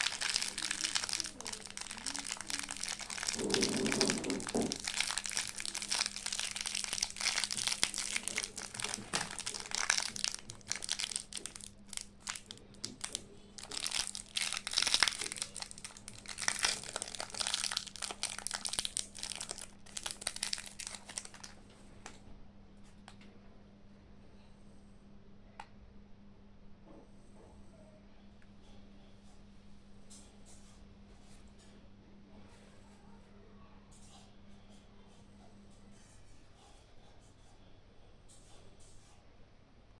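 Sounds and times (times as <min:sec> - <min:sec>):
packaging crinkling and rustling: 0:00.0 - 0:21.6.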